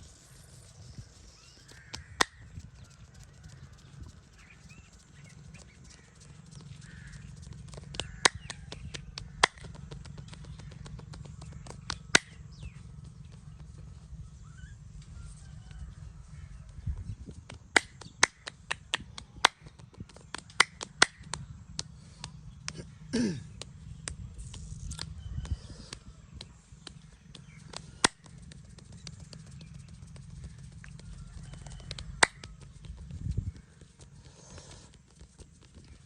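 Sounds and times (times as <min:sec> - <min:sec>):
hands rubbing during massage: 0:23.6 - 0:36.0.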